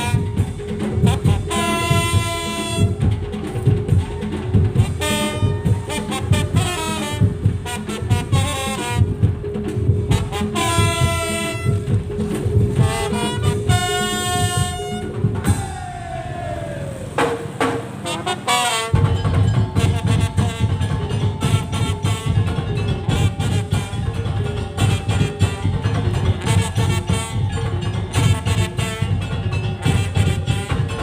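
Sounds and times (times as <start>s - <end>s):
steady drumming: 0.0s - 31.0s
high-pitched melodic lead: 19.0s - 30.2s.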